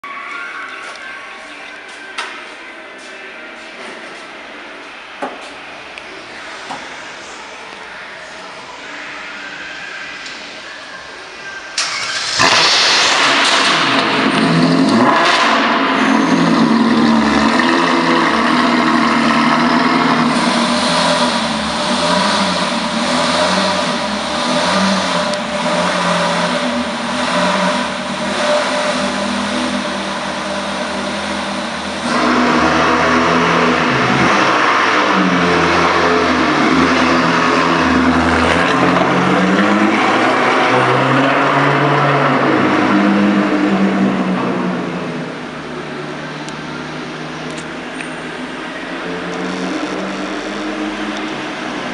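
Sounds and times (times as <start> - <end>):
car engine revving: 11.8 - 51.9.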